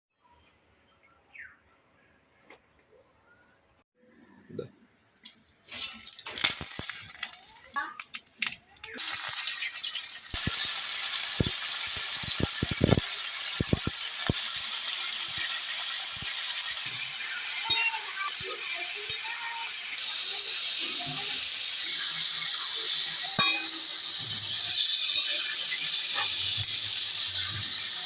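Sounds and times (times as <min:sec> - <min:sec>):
chicken sizzling in a pan: 0:05.7 - 0:28.0.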